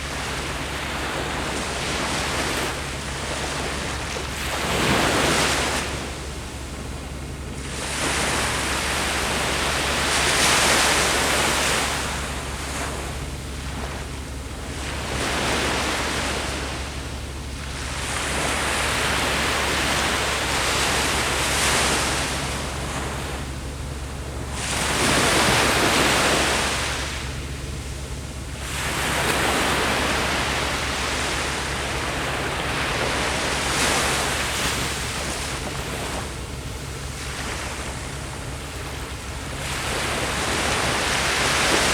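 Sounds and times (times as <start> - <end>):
ocean waves breaking on shore: 0.0 - 41.9.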